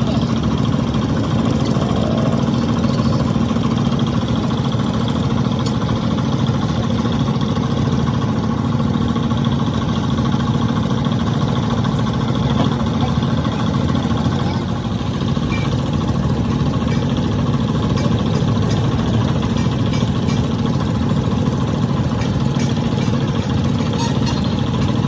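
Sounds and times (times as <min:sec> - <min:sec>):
motor humming: 0:00.0 - 0:06.8, 0:12.5 - 0:25.0.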